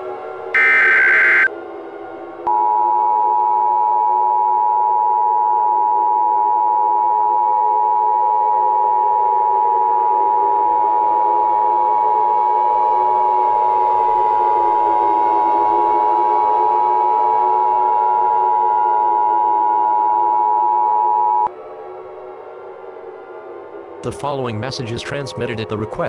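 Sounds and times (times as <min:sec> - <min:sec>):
digital header burst: 0:00.6 - 0:01.5
two-tone attention signal: 0:00.6 - 0:01.5.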